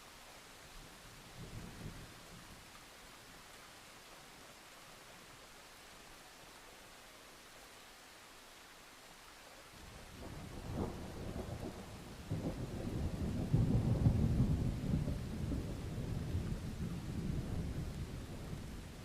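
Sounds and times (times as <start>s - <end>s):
steady rain: 0.0s - 19.0s
rolling thunder: 10.2s - 18.8s.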